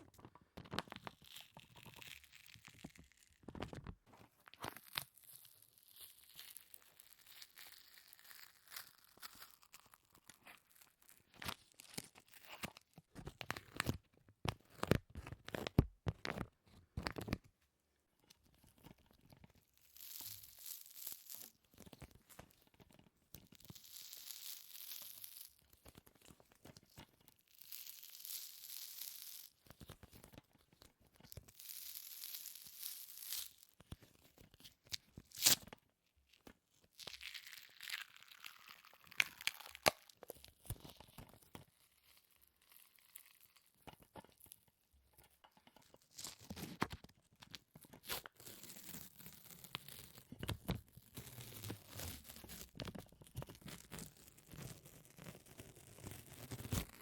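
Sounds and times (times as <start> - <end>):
sticky peeling and crackling: 34.8 - 35.7, 36.9 - 44.4, 46.1 - 57.0.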